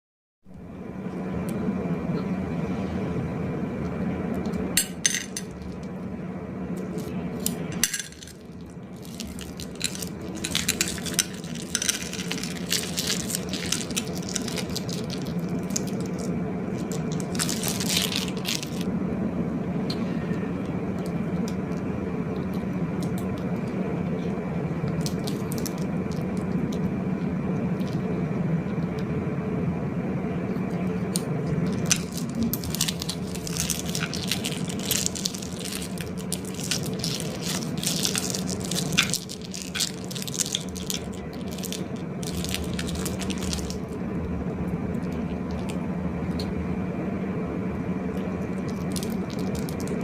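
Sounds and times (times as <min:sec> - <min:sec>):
low hum: 0:00.5 - 0:50.0
containers and utensils clinking: 0:09.0 - 0:15.9.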